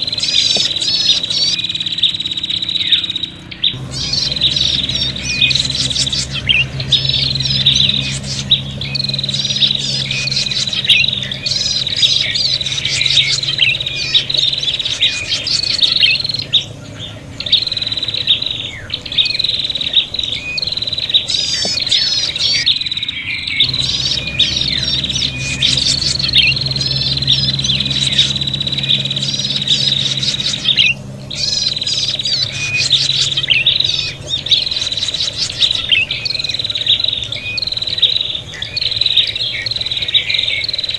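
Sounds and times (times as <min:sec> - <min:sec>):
bird chirping and trilling: 0:00.0 - 0:40.9.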